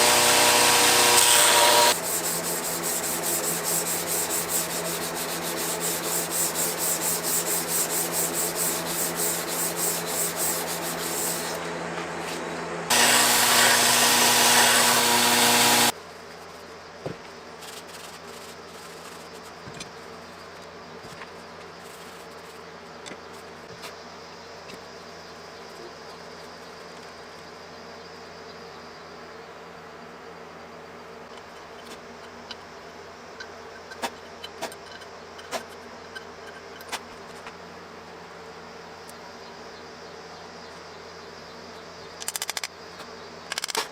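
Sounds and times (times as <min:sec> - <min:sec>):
harsh loud grinding sound: 0:00.0 - 0:15.9
sanding strokes: 0:00.0 - 0:15.9
steady hum: 0:00.0 - 0:16.0.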